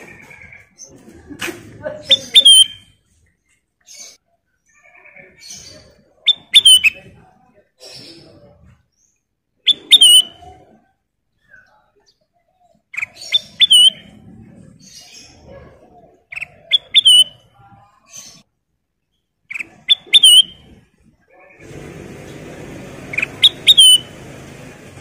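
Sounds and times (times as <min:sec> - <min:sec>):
bulbul calling: 0:02.0 - 0:02.9, 0:09.6 - 0:10.8, 0:12.9 - 0:14.2, 0:16.3 - 0:17.4, 0:19.5 - 0:20.8, 0:23.0 - 0:24.3.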